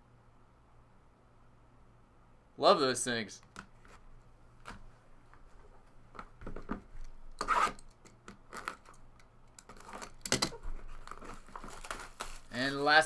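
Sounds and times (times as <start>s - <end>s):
card packaging scrapes and rustles: 9.7s - 12.9s.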